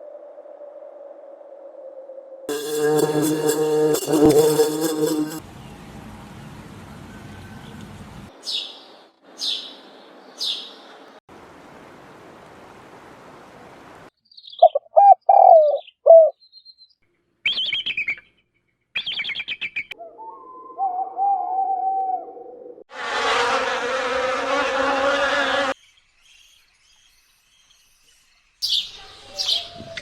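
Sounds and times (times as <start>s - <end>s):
birds chirping: 7.1s - 11.1s, 25.8s - 30.0s.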